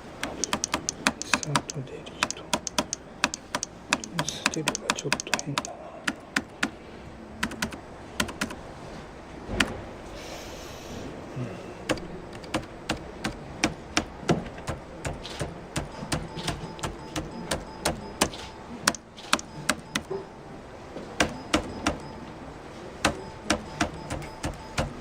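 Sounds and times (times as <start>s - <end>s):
keyboard key clicks: 0.2s - 6.8s, 7.4s - 8.6s, 11.9s - 20.1s, 21.2s - 22.0s.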